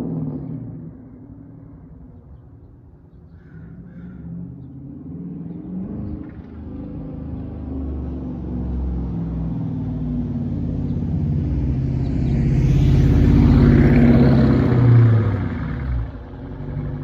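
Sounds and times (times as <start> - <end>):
car exhaust rumbling: 9.8 - 17.0.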